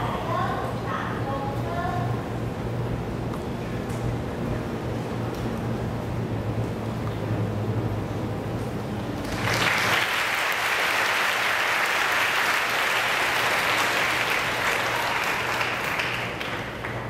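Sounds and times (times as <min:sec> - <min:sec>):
audience applauding: 0:09.2 - 0:17.0.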